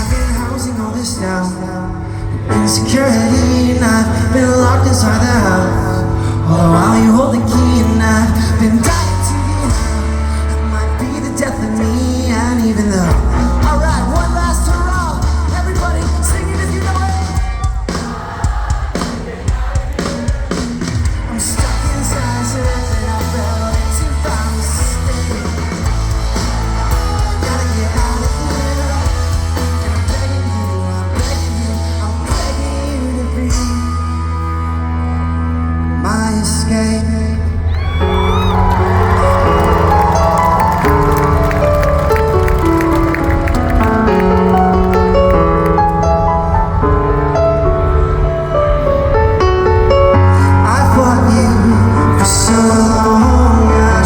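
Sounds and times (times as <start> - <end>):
lead vocal singing: 0.0 - 35.2, 49.7 - 54.0
rock band playing live: 0.0 - 36.9, 37.7 - 54.0.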